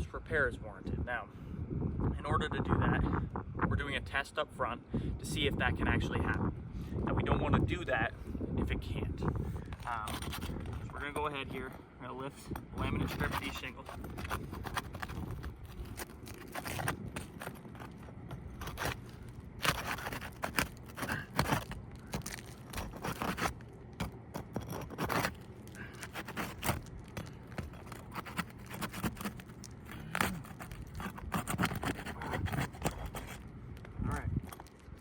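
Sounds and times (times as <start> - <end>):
shingles scraping: 9.4 - 35.0
sealant crackling and snapping: 9.6 - 11.2, 12.6 - 35.0.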